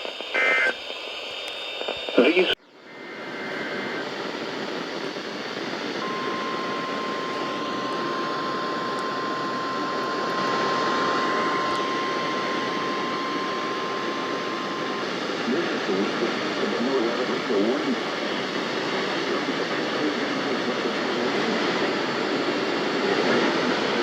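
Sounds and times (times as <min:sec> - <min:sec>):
radio static hiss: 0:00.0 - 0:24.0
steady warning alarm tone: 0:06.0 - 0:19.6.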